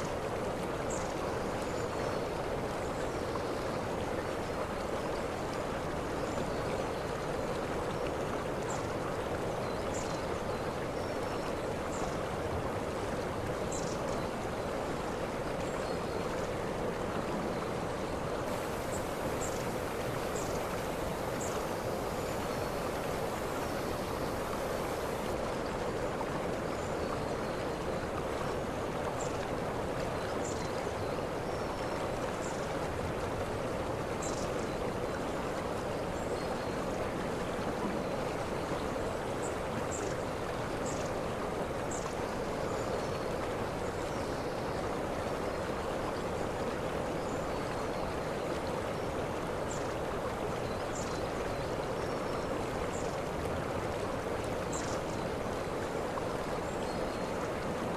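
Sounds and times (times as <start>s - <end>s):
waterfall rushing: 18.5s - 25.4s.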